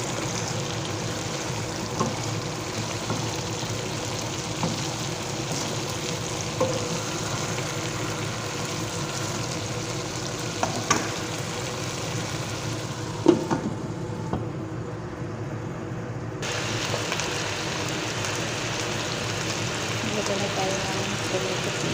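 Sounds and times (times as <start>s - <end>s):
food sizzling in a pot: 0.0s - 13.2s, 16.4s - 21.9s.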